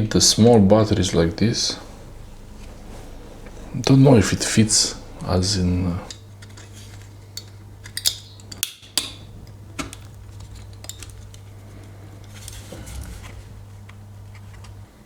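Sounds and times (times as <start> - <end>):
steady low hum: 0.0 - 15.0
metal battery cells clinking: 6.1 - 11.5.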